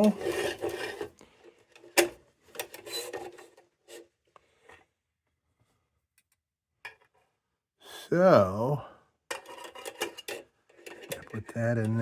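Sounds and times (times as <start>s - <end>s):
metal scraping and rubbing: 0.0s - 1.2s.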